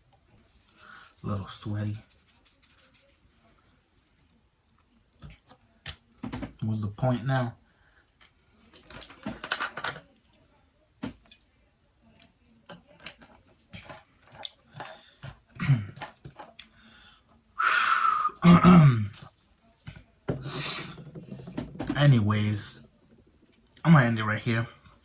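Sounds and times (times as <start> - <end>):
man exhaling loudly: 17.6 - 18.4.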